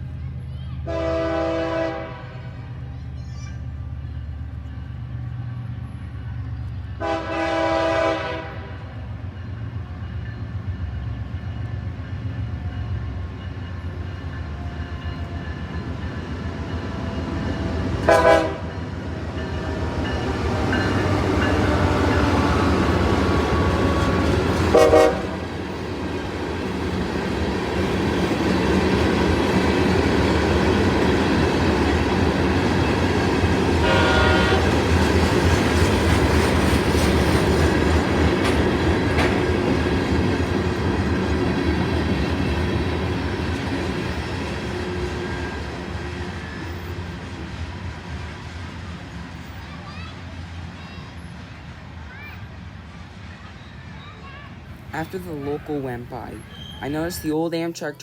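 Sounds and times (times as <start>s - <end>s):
locomotive air horn: 0.9s - 2.5s, 7.0s - 8.9s, 18.0s - 18.8s, 24.6s - 25.5s, 33.8s - 34.9s
wheels clicking on rails: 25.5s - 47.6s.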